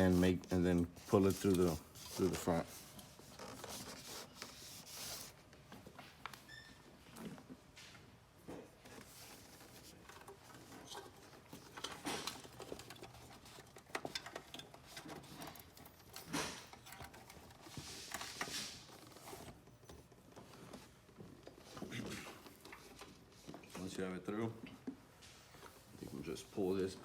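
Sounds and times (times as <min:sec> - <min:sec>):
cord rustling and scraping: 0:00.0 - 0:05.4.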